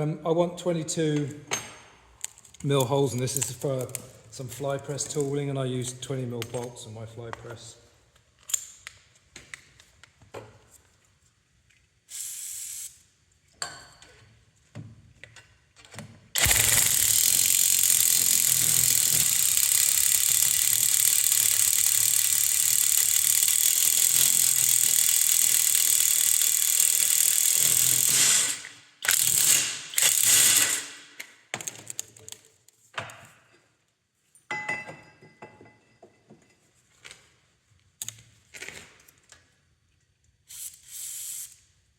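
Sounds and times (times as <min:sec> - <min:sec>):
impact wrench cutting steel: 0:16.4 - 0:31.1.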